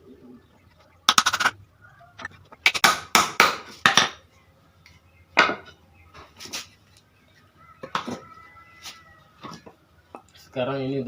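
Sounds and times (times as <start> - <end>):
hammer striking nails into wood: 2.7 - 4.1.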